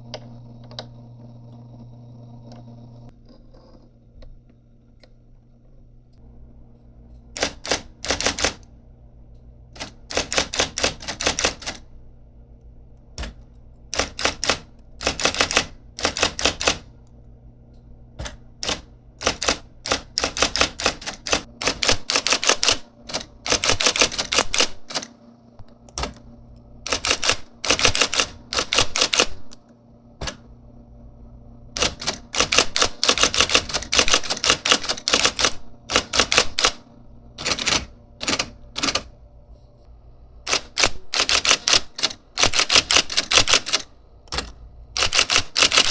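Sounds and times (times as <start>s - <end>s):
typewriter motor hum: 6.2s - 17.3s, 18.0s - 30.6s, 31.6s - 39.4s, 40.4s - 45.9s
electric typewriter keystrokes: 7.2s - 8.7s, 9.7s - 11.9s, 13.2s - 16.9s, 18.2s - 26.3s, 26.9s - 30.5s, 31.8s - 36.8s, 37.4s - 39.2s, 40.5s - 45.9s.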